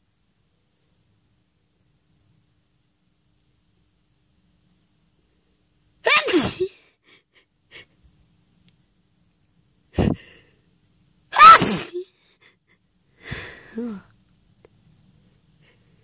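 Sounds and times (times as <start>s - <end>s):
person sneezing loudly: 6.0s - 6.8s, 11.3s - 12.1s.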